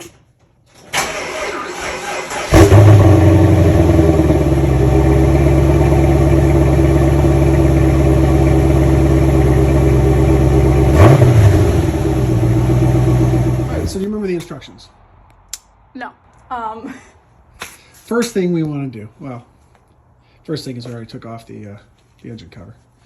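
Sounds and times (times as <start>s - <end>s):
car engine cranking: 0.9s - 14.0s
car engine idling: 1.2s - 14.0s.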